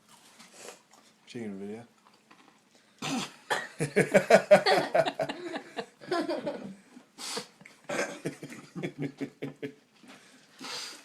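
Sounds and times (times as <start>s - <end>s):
person laughing: 3.8s - 6.7s, 7.9s - 9.8s.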